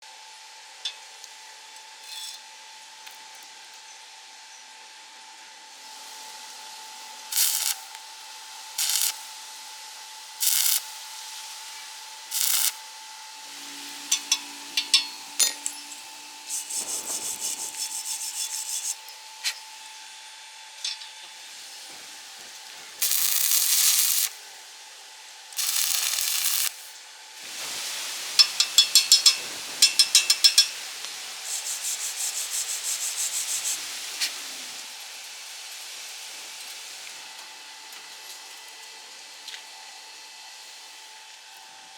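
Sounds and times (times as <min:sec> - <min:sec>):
faint steady whine: 0:00.2 - 0:31.5
rapid crackling: 0:07.3 - 0:07.9, 0:08.8 - 0:09.2, 0:10.4 - 0:10.8, 0:12.3 - 0:12.8, 0:22.9 - 0:24.3, 0:25.6 - 0:26.8
scraping strokes: 0:13.5 - 0:19.6.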